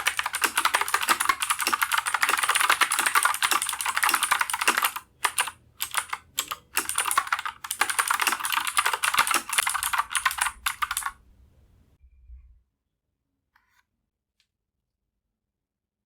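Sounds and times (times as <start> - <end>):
clicky mechanical keyboard typing: 0.0 - 11.2.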